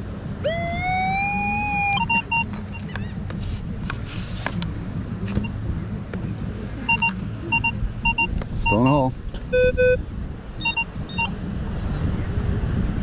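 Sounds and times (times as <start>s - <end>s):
surf and wind rumble: 0.0s - 13.0s
long rising tone: 0.4s - 2.5s
metal detector pinpointer beeping: 0.5s - 2.9s, 6.9s - 10.0s, 10.6s - 11.3s.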